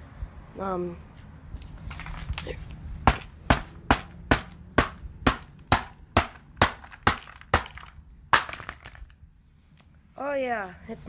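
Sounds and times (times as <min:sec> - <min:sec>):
rock striking a phone: 0:03.1 - 0:09.1.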